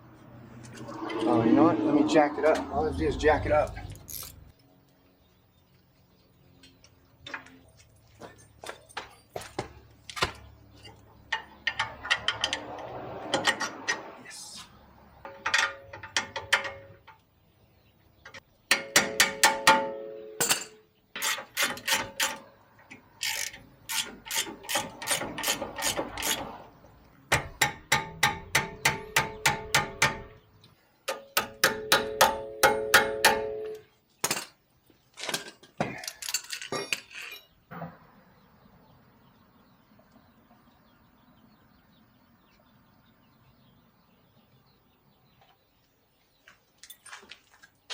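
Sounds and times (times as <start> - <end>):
ratchet wrench clicking: 4.0 - 4.4, 23.2 - 26.4.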